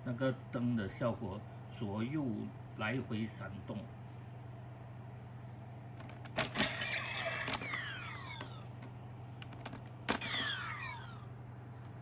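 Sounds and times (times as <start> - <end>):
toy belt click: 6.2 - 8.6.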